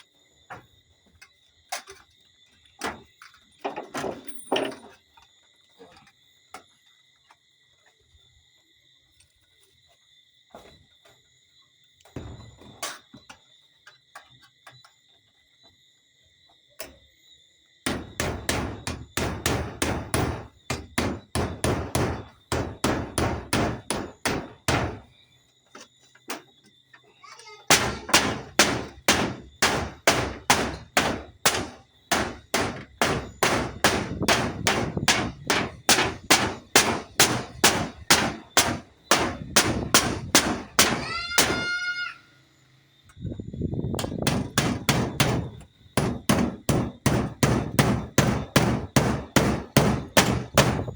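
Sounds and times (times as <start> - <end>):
hammer driving nails: 17.9 - 25.0, 27.7 - 41.6, 44.0 - 50.9
scattered knocks: 17.9 - 25.1, 44.0 - 50.9.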